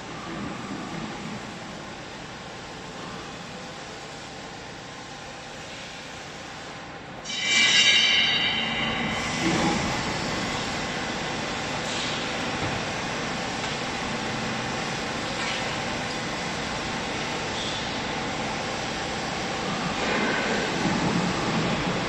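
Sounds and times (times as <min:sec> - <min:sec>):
high-pitched metallic squeal: 0:07.2 - 0:10.6.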